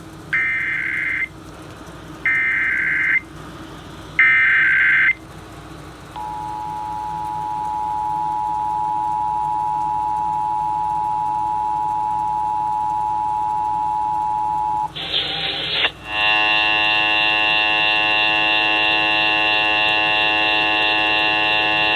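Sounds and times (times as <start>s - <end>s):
two-tone attention signal: 0.4s - 1.3s
screechy data bursts: 14.9s - 16.4s.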